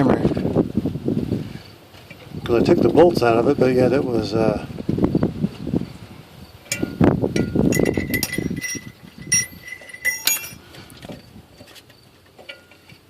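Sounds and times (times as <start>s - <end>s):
short ringing metal clinks: 6.7s - 10.7s
metal parts clinking and clattering: 6.7s - 10.8s.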